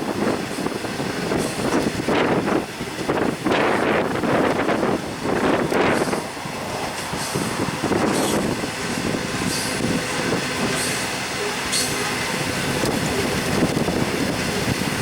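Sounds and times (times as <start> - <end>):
train wheels rolling on rails: 0.0 - 15.0
high wheel squeals: 7.1 - 15.0.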